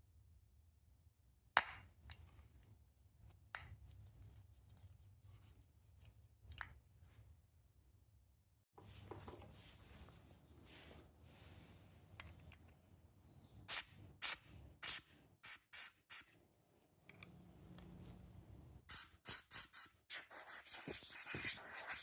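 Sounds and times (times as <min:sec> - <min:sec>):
pressurised spray hissing: 0:18.9 - 0:22.0.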